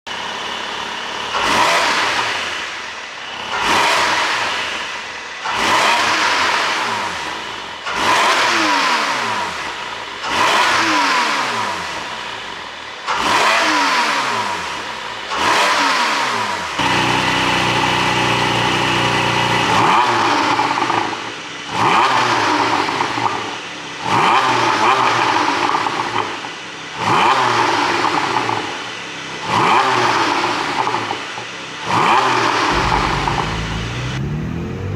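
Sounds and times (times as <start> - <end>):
car engine revving in blips: 1.3 - 2.7, 3.3 - 12.1, 13.1 - 20.9, 31.9 - 34.9
exhaust pops: 32.7 - 34.9.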